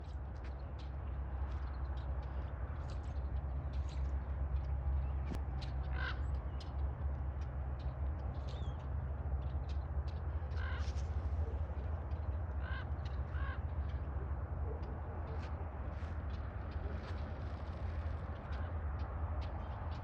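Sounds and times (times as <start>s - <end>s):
crows cawing: 5.8s - 6.8s, 10.4s - 14.1s.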